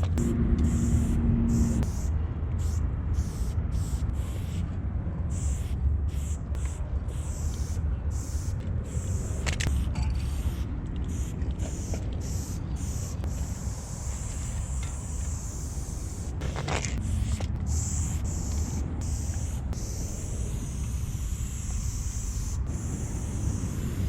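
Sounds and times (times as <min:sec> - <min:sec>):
loud rasping burst: 0:00.0 - 0:04.7
spray paint can hissing: 0:00.0 - 0:04.7, 0:05.3 - 0:24.0
low rumble: 0:00.0 - 0:06.1.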